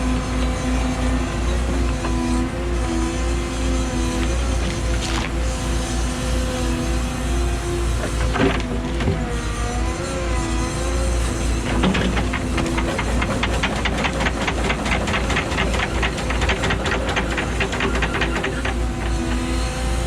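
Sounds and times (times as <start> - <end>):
excavator diesel engine: 0.0 - 20.0
rapid metallic clanks: 11.7 - 19.8.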